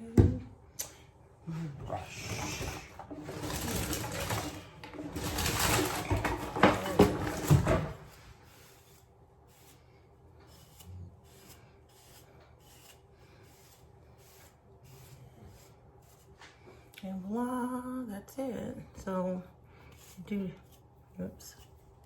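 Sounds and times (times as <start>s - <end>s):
soft brush strokes on wig: 8.1s - 16.9s.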